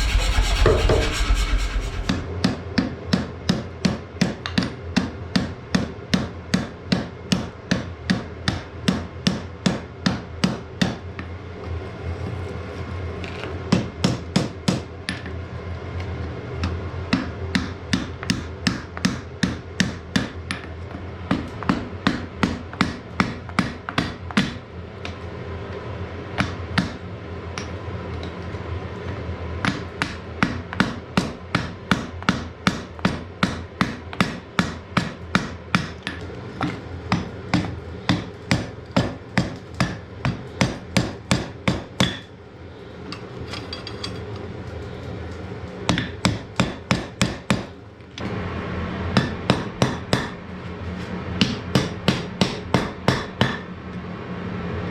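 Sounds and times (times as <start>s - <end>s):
steady low hum: 0.0s - 2.4s
hammer striking iron on anvil: 29.7s - 36.2s, 37.1s - 42.3s, 45.9s - 47.7s, 49.2s - 50.4s, 51.4s - 53.7s.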